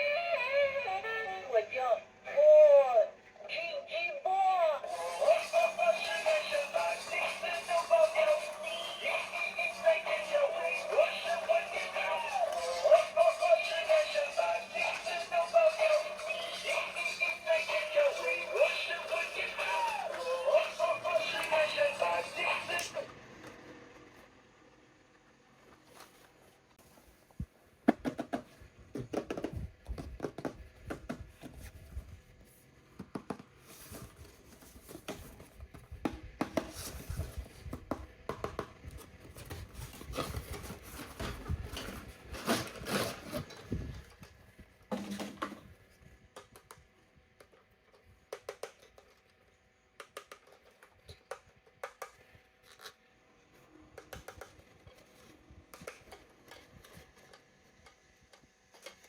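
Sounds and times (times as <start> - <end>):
plastic and cardboard packaging rustling: 31.2 - 35.9, 38.8 - 45.2.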